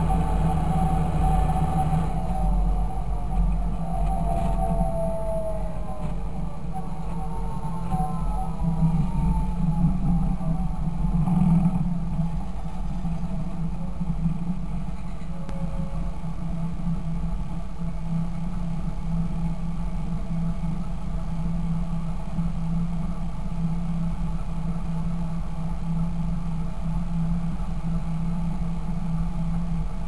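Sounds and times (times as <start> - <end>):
tractor diesel engine running: 0.0 - 21.4.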